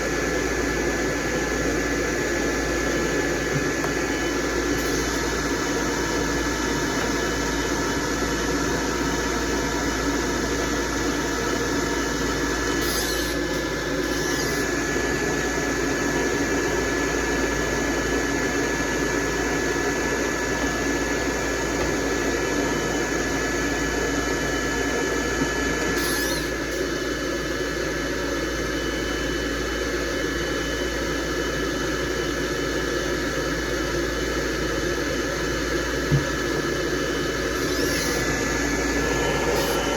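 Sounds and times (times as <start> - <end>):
hair dryer blowing: 0.0 - 25.8, 35.8 - 39.9.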